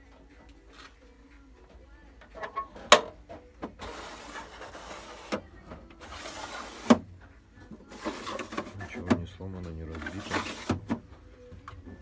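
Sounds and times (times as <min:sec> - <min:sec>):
parts scraping: 0:03.8 - 0:07.1, 0:07.7 - 0:09.2, 0:09.8 - 0:11.1.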